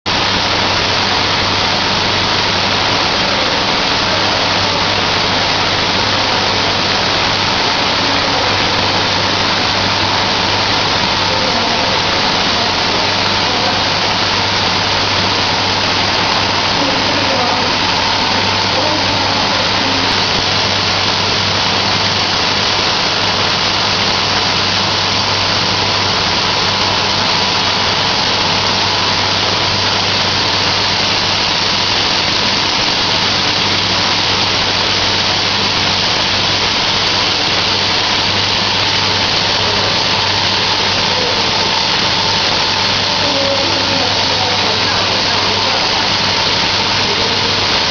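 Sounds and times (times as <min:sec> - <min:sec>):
laser cutting machine running: 0:00.1 - 0:47.9.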